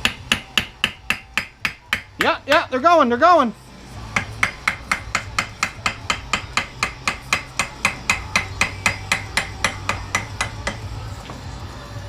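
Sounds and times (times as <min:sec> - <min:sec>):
hammer striking metal: 0:00.0 - 0:02.7, 0:04.1 - 0:10.9.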